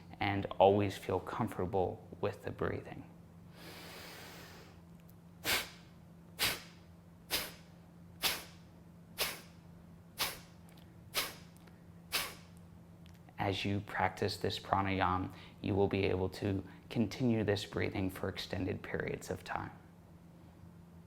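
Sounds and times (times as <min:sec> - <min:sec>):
soft breath: 0:03.5 - 0:04.8
sharp nasal exhalations: 0:03.6 - 0:04.8, 0:05.4 - 0:09.6, 0:10.2 - 0:12.6.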